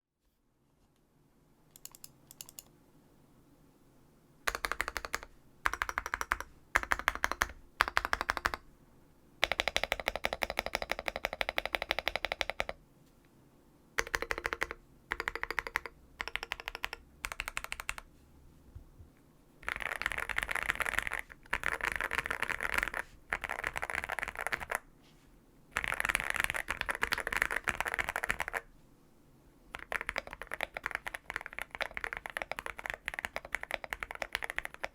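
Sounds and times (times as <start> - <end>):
mechanical keyboard typing: 1.8 - 2.7, 4.5 - 8.6, 9.4 - 12.8, 14.0 - 18.1, 19.6 - 24.8, 25.8 - 28.7, 29.7 - 34.9.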